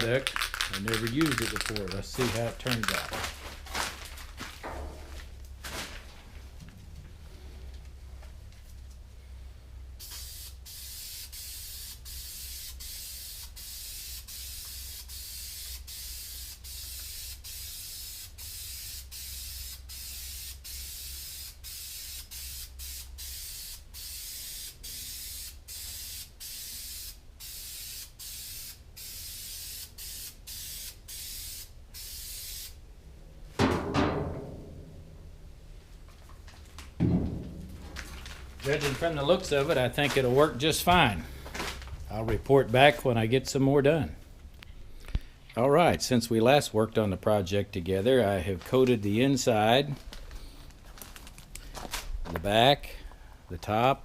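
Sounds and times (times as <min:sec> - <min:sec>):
aerosol spray can hissing: 0:00.0 - 0:02.0, 0:10.0 - 0:32.8
loud knock or clatter: 0:33.6 - 0:34.8, 0:37.0 - 0:37.8.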